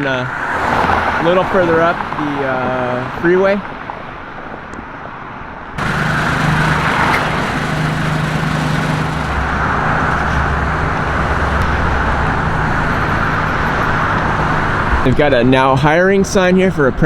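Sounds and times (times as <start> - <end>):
passing cars and tyre noise: 0.0 - 17.0
low engine hum: 5.8 - 15.2.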